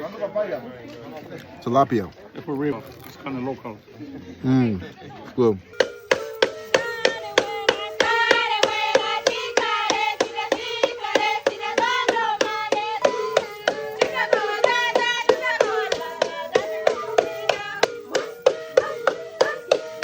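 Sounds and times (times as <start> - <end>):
sharp percussive beat: 5.7 - 20.0
wavering melody: 5.7 - 20.0.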